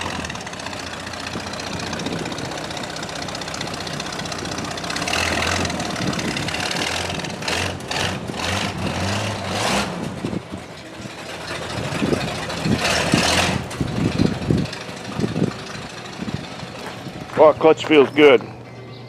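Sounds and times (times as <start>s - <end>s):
car engine revving: 0.0s - 17.4s.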